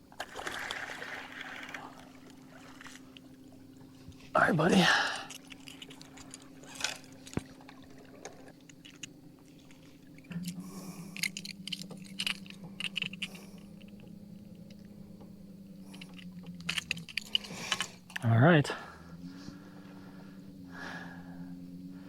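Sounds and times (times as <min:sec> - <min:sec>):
steady hum: 0:01.2 - 0:22.0
handling clicks and knocks: 0:08.6 - 0:14.9, 0:15.9 - 0:18.3.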